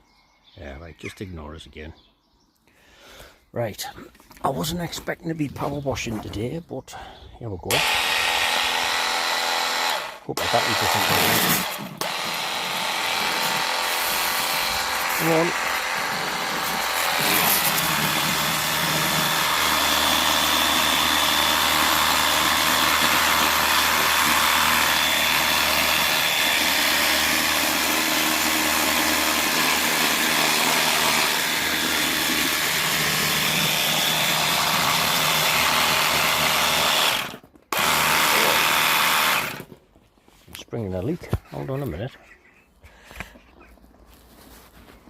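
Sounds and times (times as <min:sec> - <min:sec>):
pressure washer spraying: 0:13.9 - 0:15.8.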